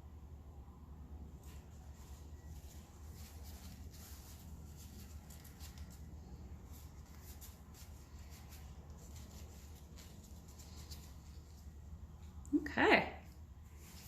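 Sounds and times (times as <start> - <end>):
low room hum: 0.0 - 14.0
light scraping and handling: 1.4 - 12.4.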